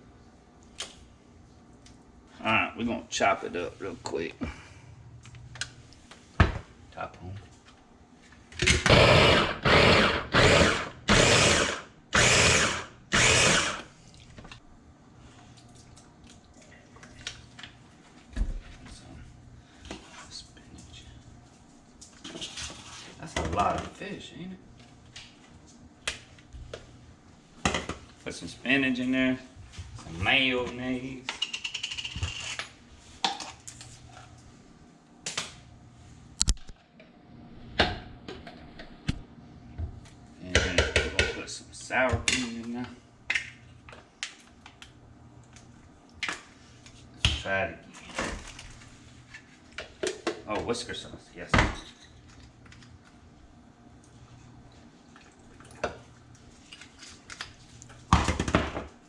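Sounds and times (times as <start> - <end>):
food processor chopping: 8.6 - 13.9.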